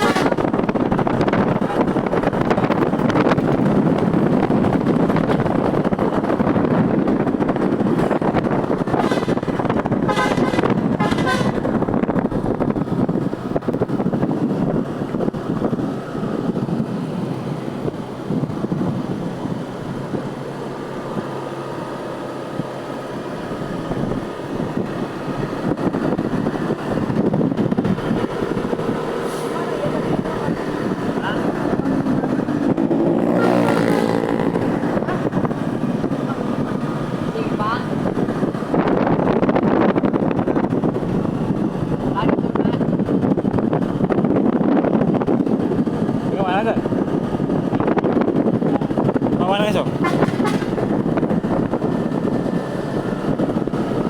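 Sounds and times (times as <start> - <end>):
musical bus air horn: 0.0 - 0.6, 8.9 - 11.8, 50.0 - 50.8
engine and road noise: 0.0 - 54.0.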